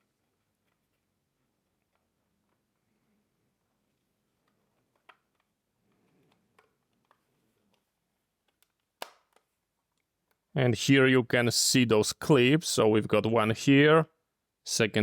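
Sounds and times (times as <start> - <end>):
faint plastic clicks: 3.8 - 10.5
plastic clip snapping: 8.5 - 9.5.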